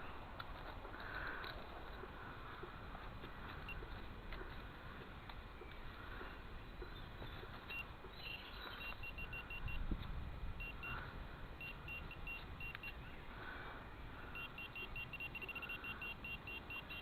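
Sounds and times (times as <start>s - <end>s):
metal detector beeping: 7.6s - 10.0s, 10.6s - 11.0s, 11.6s - 13.2s, 14.3s - 17.0s.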